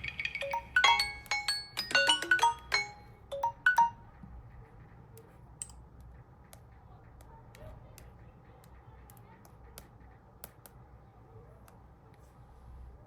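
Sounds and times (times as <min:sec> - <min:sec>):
phone ringtone chiming melody: 0:00.0 - 0:04.2.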